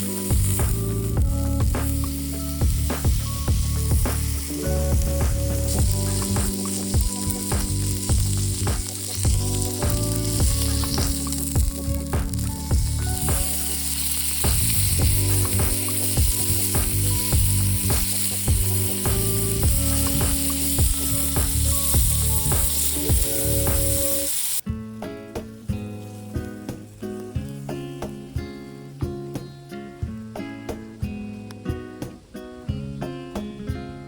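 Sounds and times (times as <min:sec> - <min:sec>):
meat sizzling on a griddle: 0:00.0 - 0:24.6
soft background music: 0:00.0 - 0:34.0.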